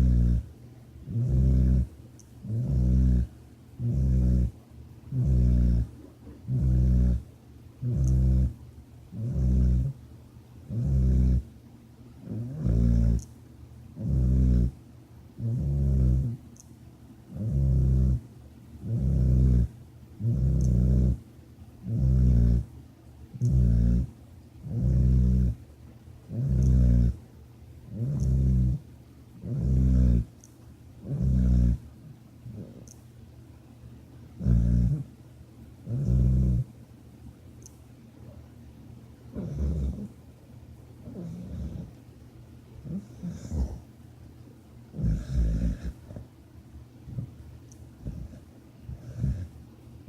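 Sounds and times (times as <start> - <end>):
quiet breaths: 0.0 - 37.0, 37.6 - 49.8
person snoring: 1.1 - 1.9, 2.5 - 4.5, 5.1 - 5.9, 6.5 - 7.2, 7.8 - 8.5, 17.4 - 18.2, 18.8 - 21.2, 21.9 - 22.6, 24.7 - 25.6, 27.9 - 28.8, 29.4 - 30.3, 31.0 - 31.8, 35.9 - 36.6, 42.9 - 43.8, 45.0 - 46.2, 48.0 - 49.5.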